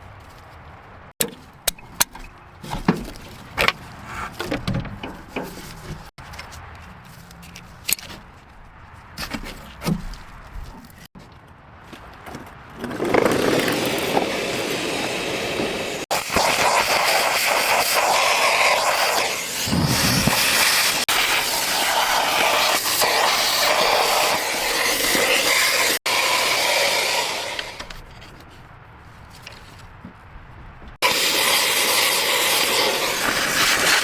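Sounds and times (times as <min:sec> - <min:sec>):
loud steady hissing spray: 0:14.4 - 0:27.8, 0:31.0 - 0:34.0.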